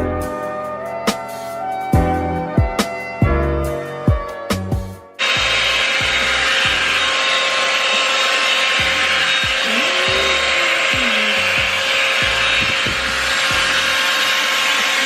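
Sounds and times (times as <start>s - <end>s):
hair dryer brush blowing air: 5.2s - 15.0s.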